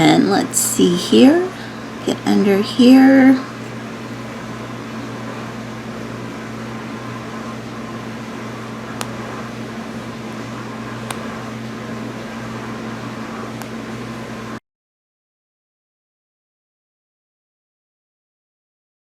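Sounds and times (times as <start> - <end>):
electrical hum: 0.0 - 14.6.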